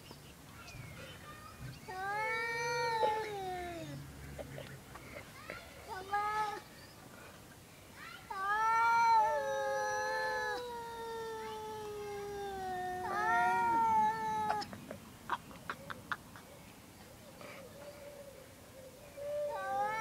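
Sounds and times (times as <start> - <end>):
cats yowling: 8.3 - 14.7, 19.2 - 20.0.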